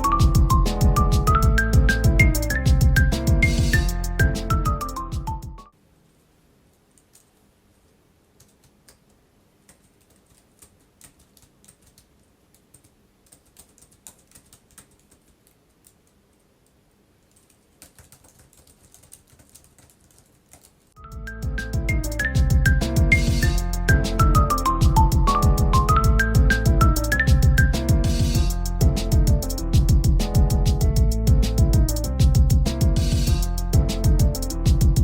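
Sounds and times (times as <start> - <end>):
keyboard typing: 8.4 - 20.9.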